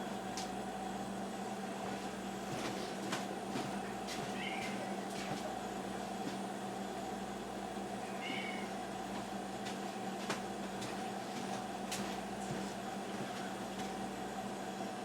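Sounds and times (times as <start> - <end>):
steady low hum: 0.0 - 15.0
cat meowing: 4.4 - 5.0, 8.0 - 8.7.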